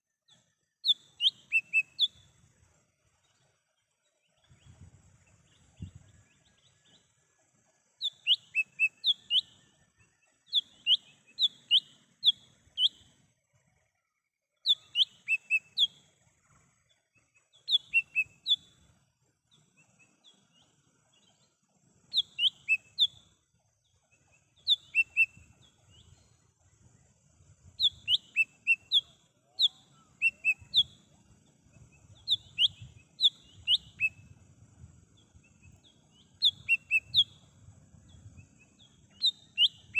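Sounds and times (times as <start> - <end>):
bird singing high sharp notes: 0.8 - 2.3, 27.8 - 31.0, 32.2 - 34.3, 35.4 - 37.5.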